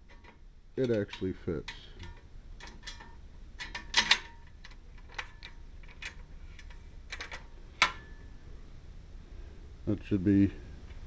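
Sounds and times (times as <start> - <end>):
metal clicks and knocks: 0.0 - 8.1.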